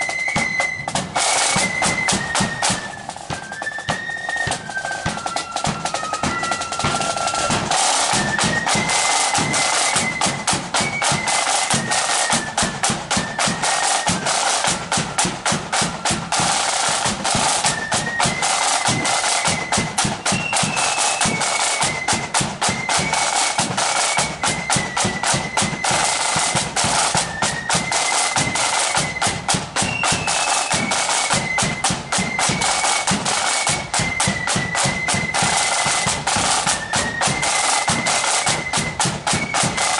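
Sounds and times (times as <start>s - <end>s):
flutes playing melody: 0.0s - 39.9s
snare drum rolls: 0.0s - 39.9s.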